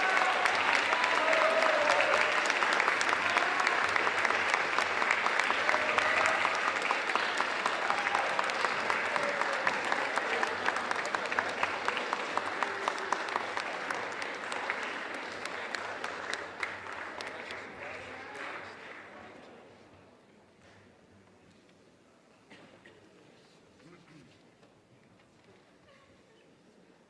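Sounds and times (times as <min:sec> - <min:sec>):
audience applauding and cheering: 0:00.0 - 0:19.3.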